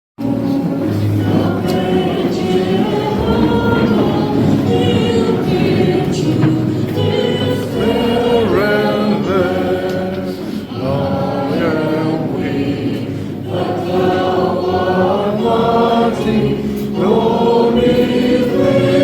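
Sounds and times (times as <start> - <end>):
choir singing: 0.2 - 19.0.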